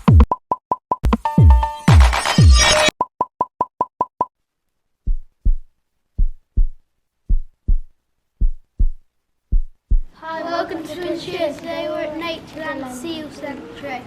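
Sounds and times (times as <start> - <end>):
quick electronic beeps: 1.2 - 2.9
heartbeat sound effect: 5.0 - 10.1.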